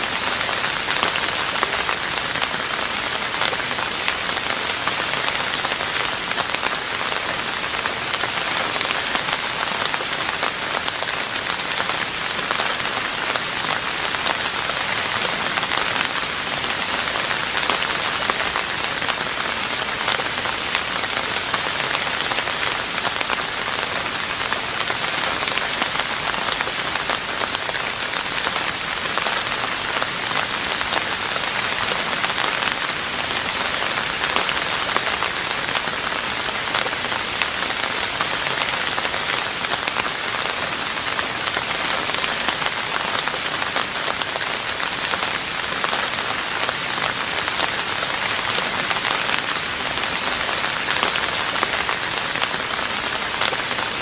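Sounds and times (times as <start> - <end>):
rain falling on a roof: 0.0 - 54.0.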